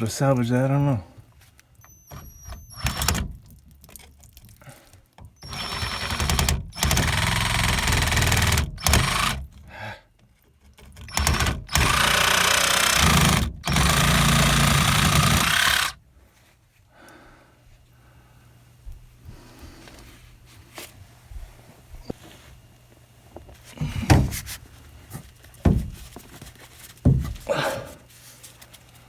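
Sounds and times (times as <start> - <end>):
power saw cutting pipe: 5.4 - 9.4, 11.1 - 16.0.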